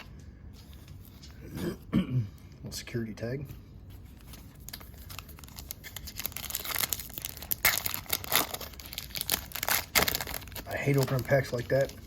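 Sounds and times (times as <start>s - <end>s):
wrapper tearing and crinkling: 4.1s - 12.0s.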